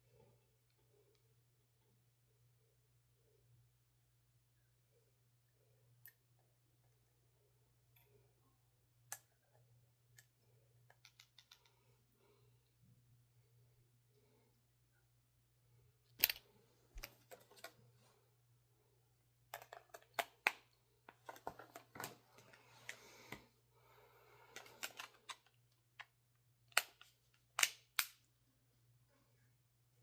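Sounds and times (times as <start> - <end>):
faint steady hum: 0.0 - 30.0
clicks of small hard items: 10.9 - 11.8, 24.5 - 26.1.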